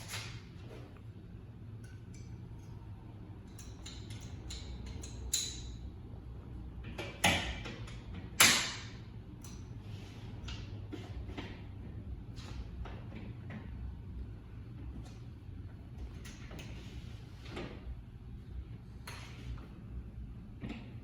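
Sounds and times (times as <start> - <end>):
steady low hum: 0.0 - 21.0.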